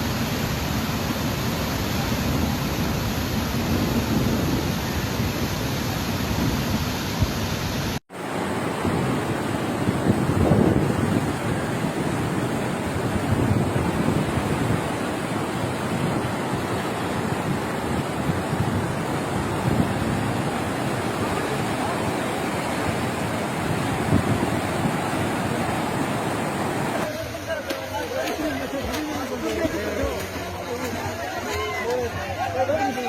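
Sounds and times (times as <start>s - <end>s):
floodwater rushing: 0.0s - 33.0s
wind buffeting microphone: 8.6s - 26.9s.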